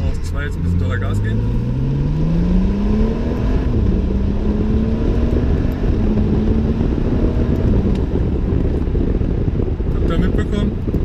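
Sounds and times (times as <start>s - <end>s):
car engine accelerating hard: 0.0s - 11.0s.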